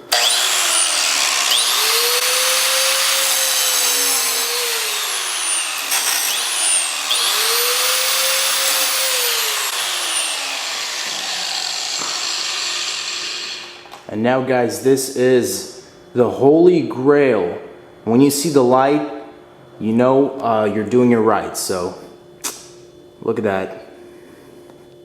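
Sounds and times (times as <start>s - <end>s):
angle grinder grinding metal: 0.0s - 14.0s.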